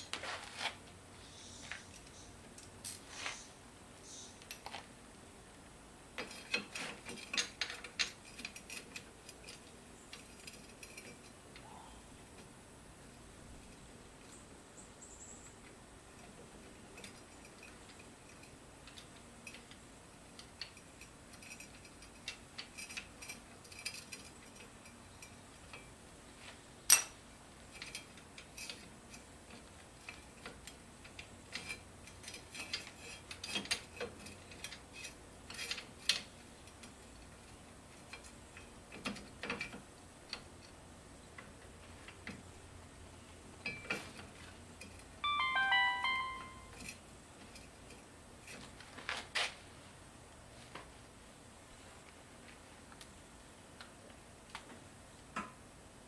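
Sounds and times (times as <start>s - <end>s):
metal tools clinking: 20.6s - 25.9s
short electronic notes: 45.2s - 46.8s.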